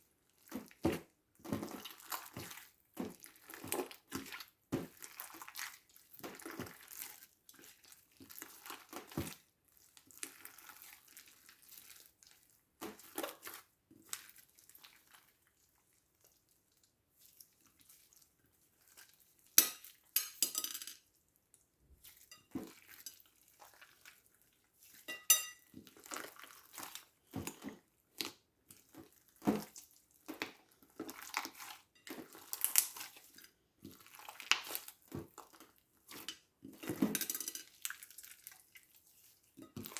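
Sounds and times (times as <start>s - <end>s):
slime squished by hand: 25.8s - 35.7s.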